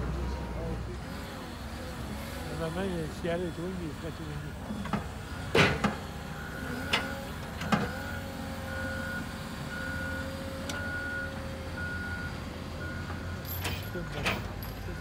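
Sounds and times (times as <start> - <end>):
diesel engine rumble: 0.0 - 15.0
reversing alarm beeping: 6.3 - 15.0.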